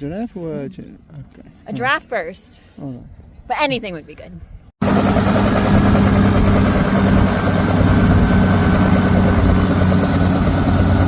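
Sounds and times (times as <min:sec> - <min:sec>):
helicopter rotor and engine drone: 0:04.8 - 0:11.0.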